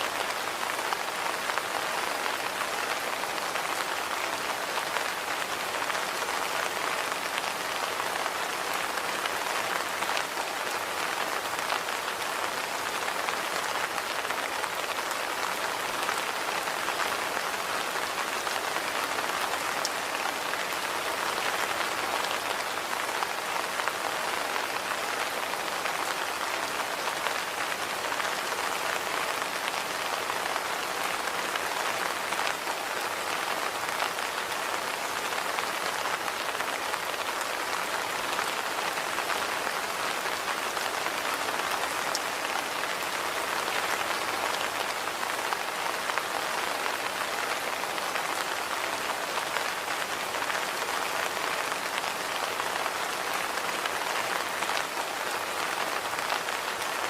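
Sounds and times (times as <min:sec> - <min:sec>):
rain on hard surfaces: 0:00.0 - 0:57.0.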